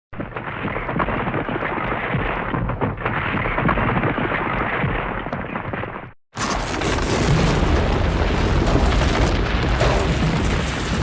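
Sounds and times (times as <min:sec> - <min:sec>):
avalanche of sliding snow: 0:06.4 - 0:11.0.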